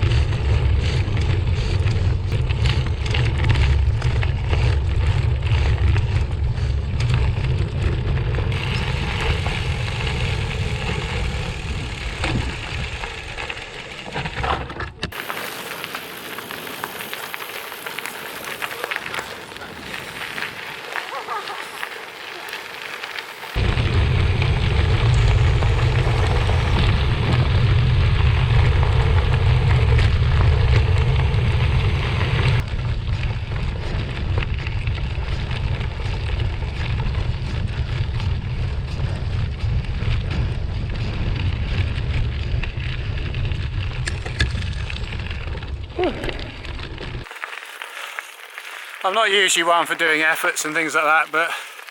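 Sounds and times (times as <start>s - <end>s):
tyres rolling on gravel: 0.0s - 51.9s
wind buffeting microphone: 23.6s - 47.3s.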